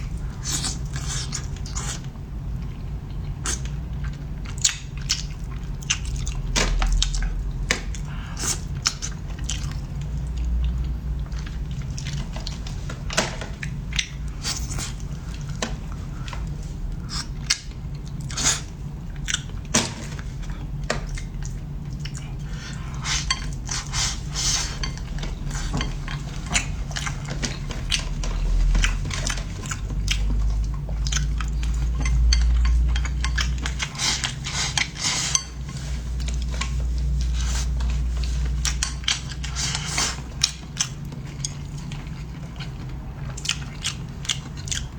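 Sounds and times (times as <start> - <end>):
steady low hum: 0.0 - 44.9
chewing: 0.1 - 44.9
utensils clinking on dishes: 31.1 - 35.9.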